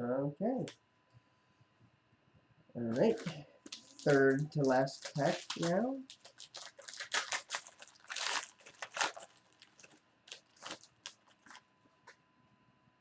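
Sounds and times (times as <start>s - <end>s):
foil wrapper tearing and crinkling: 3.0s - 11.6s.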